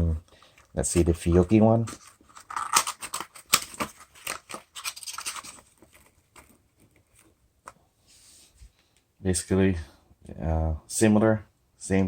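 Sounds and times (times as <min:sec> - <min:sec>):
box rustling: 0:00.6 - 0:07.4.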